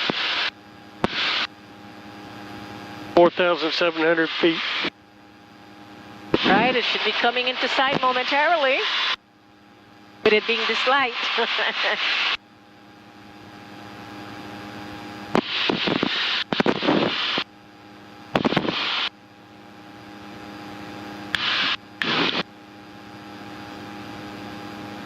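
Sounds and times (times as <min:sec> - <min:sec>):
radio hiss bursts: 0:00.0 - 0:01.5, 0:03.8 - 0:04.9, 0:06.3 - 0:09.2, 0:10.3 - 0:12.4, 0:15.3 - 0:17.5, 0:18.3 - 0:19.1, 0:21.3 - 0:22.5
airplane engine drone: 0:00.0 - 0:25.0.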